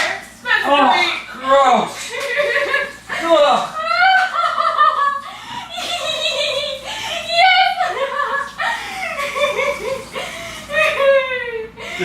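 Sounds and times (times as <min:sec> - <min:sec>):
people laughing and exclaiming: 0:02.1 - 0:11.7.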